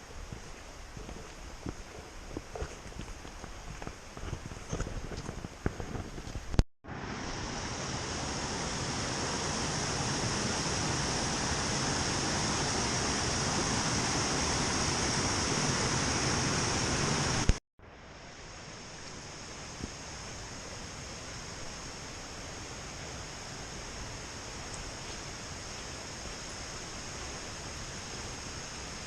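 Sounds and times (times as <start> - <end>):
waterfall rushing: 6.9 - 17.6.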